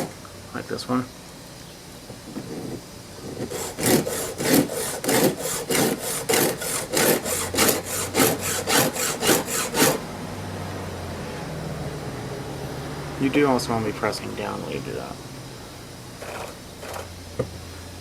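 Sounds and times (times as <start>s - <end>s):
file rasping on chainsaw chain: 2.5s - 10.0s.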